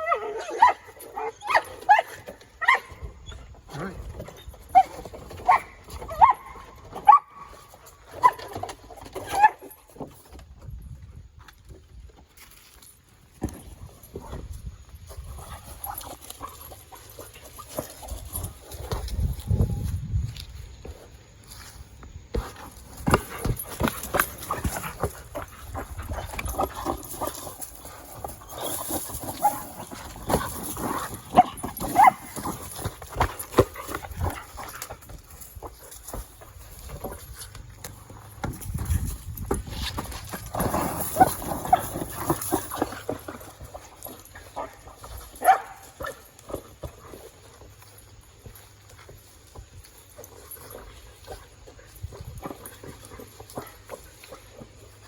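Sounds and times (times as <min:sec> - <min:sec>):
dog yipping: 0:00.0 - 0:03.4, 0:04.7 - 0:07.5
dog barking: 0:45.4 - 0:45.8.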